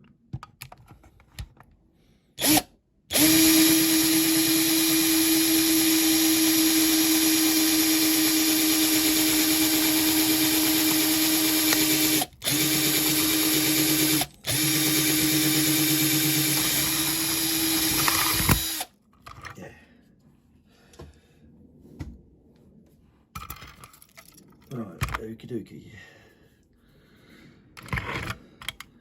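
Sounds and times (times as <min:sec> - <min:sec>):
small electric drill running: 0:02.4 - 0:18.9.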